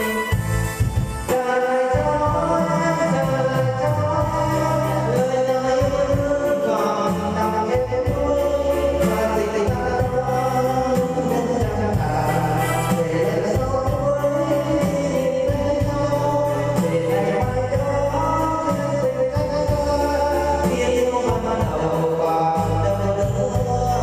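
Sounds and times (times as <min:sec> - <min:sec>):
music with bass beat: 0:00.0 - 0:24.0
person singing: 0:00.0 - 0:24.0.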